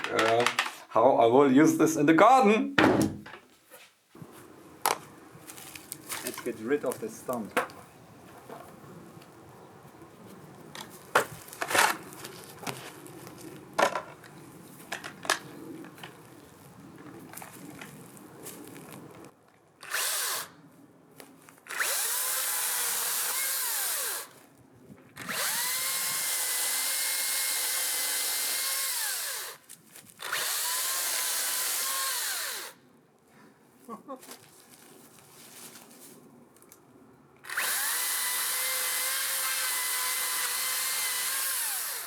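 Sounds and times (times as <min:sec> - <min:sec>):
handling knocks: 0:02.8 - 0:03.5
electric chainsaw whining: 0:19.8 - 0:20.6, 0:21.7 - 0:24.4, 0:25.2 - 0:29.6, 0:30.2 - 0:32.8, 0:37.4 - 0:42.0.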